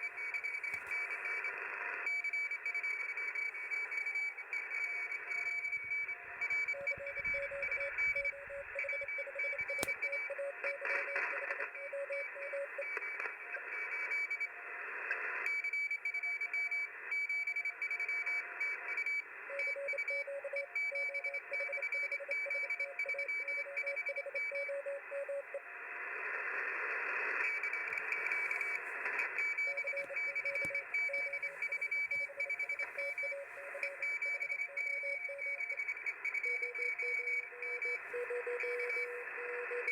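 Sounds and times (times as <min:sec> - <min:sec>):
morse code beeps: 0:00.0 - 0:13.0, 0:19.6 - 0:25.5, 0:27.4 - 0:39.9
radio band hiss: 0:25.9 - 0:34.0.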